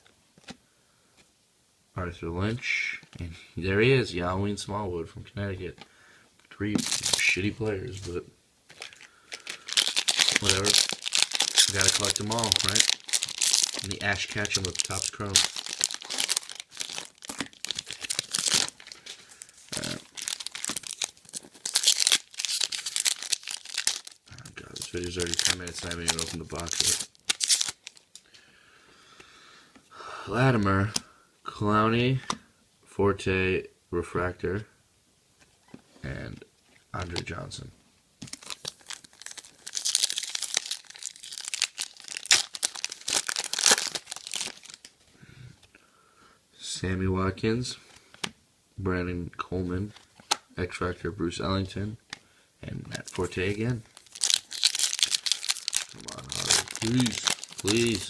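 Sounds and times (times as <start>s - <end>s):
plastic packaging crinkling and ripping: 6.8s - 8.1s, 8.7s - 28.3s, 38.2s - 45.0s, 52.9s - 58.0s.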